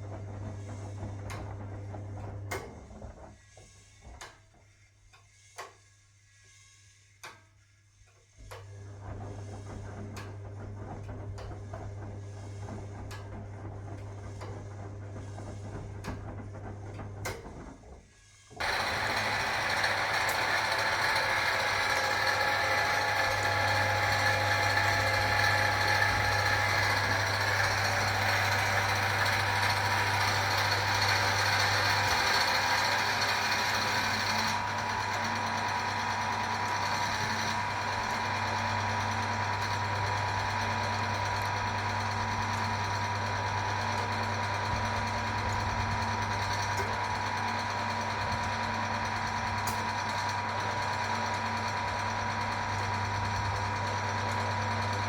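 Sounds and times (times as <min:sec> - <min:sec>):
washing machine motor hum: 0:00.0 - 0:04.7, 0:08.3 - 0:55.0
rough mechanical running: 0:18.6 - 0:55.0.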